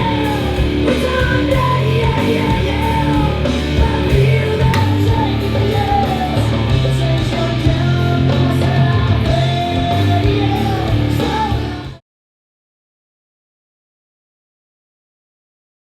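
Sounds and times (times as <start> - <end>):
rock song over loudspeakers: 0.0 - 12.0.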